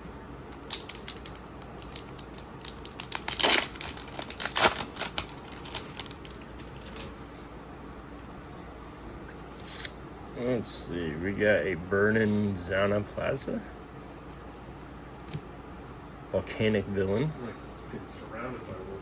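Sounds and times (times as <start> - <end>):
foil wrapper crinkling: 0.5 - 7.1.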